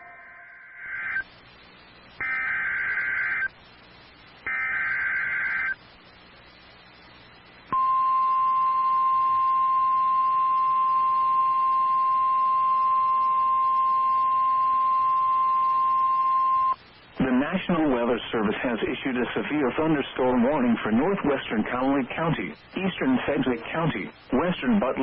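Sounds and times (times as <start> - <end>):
warbling digital data bursts: 2.2 - 3.6, 4.4 - 5.9.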